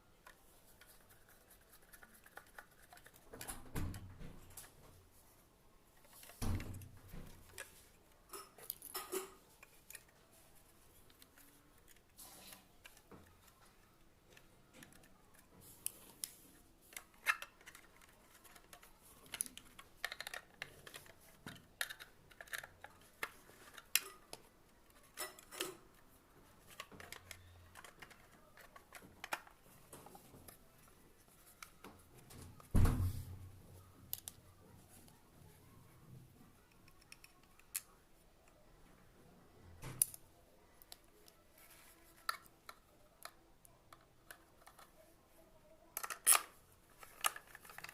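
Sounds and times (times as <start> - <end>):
loud thump: 32.8 - 33.3.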